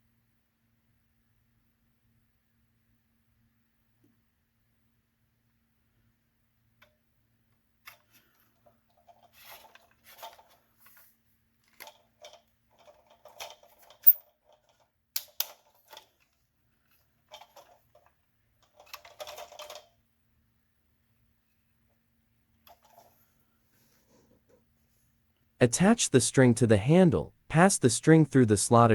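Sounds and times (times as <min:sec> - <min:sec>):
plastic parts clicking and rattling: 0:07.8 - 0:20.0, 0:22.6 - 0:23.3.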